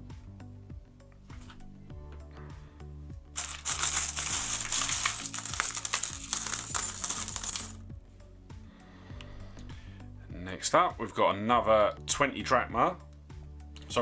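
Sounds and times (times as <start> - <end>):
background music: 0.0 - 14.0
coins clinking in a tub: 3.4 - 7.8.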